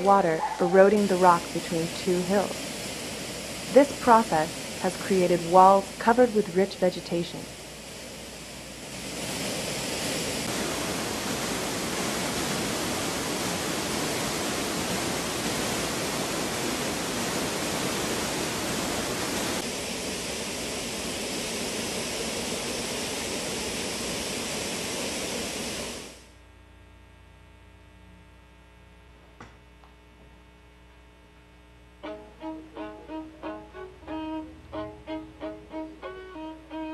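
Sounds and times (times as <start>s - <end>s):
waterfall rushing: 0.0s - 7.6s, 8.8s - 23.8s.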